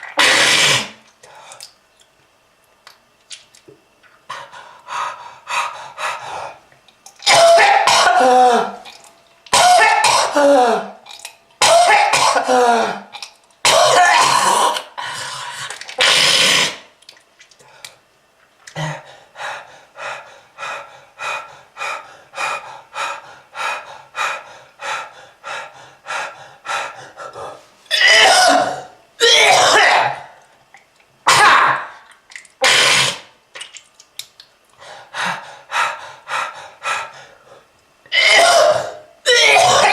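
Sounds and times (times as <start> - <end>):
person coughing harshly: 7.2 - 8.8, 9.5 - 11.0, 11.6 - 14.9, 27.9 - 30.3, 31.3 - 31.9, 38.1 - 39.9.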